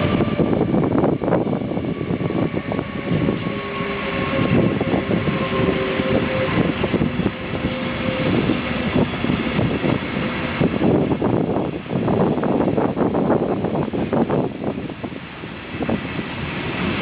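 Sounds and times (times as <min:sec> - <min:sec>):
train wheels on rails: 0:00.0 - 0:17.0
thin whining tones: 0:01.4 - 0:10.3.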